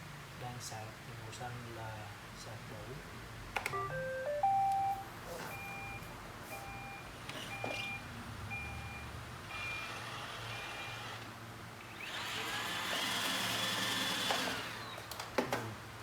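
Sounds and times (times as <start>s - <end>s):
robot vacuum beeping: 6.6s - 11.2s
motor whirring with a whine: 9.4s - 15.2s.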